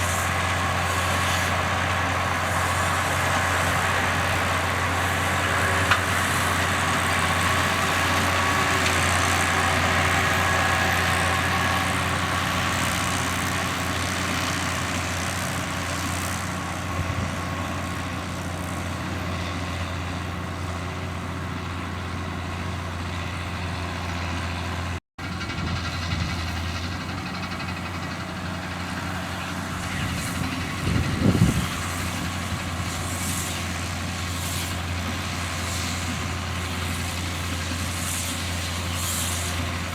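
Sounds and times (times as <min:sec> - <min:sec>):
tractor diesel engine running: 0:00.0 - 0:39.9
baler mechanical noise: 0:25.2 - 0:39.9.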